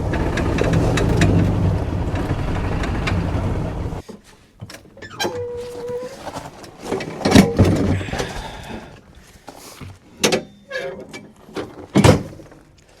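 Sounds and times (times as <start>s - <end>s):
golf cart engine running: 0.0s - 4.0s.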